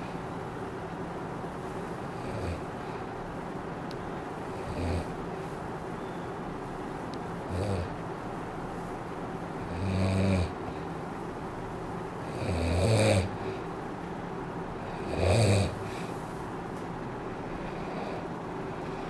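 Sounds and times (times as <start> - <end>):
steady hiss: 0.0 - 16.9
person snoring: 2.1 - 2.7, 4.5 - 5.1, 7.5 - 8.0, 9.6 - 10.6, 12.3 - 13.4, 14.9 - 16.4.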